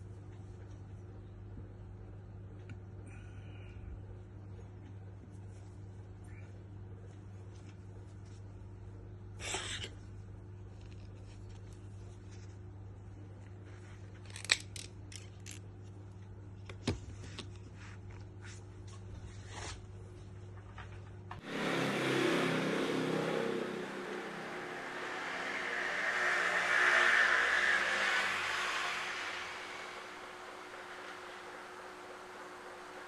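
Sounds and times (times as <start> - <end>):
loud even rushing noise: 21.4 - 33.0
low hum: 21.4 - 33.0.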